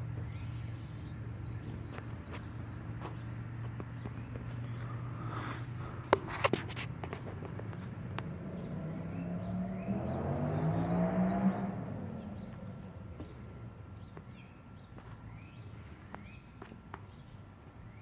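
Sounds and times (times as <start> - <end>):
faint bird chirps: 0.0 - 3.3
low engine hum: 0.0 - 18.0.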